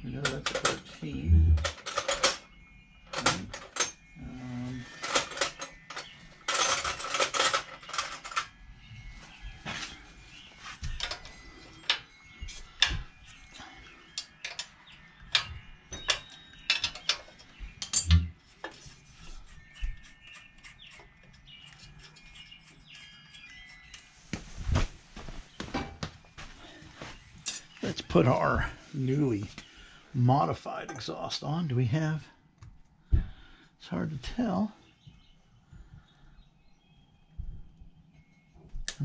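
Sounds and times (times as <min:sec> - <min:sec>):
metallic clinks of hand tools: 0:00.0 - 0:08.5, 0:11.0 - 0:18.4, 0:19.4 - 0:24.1.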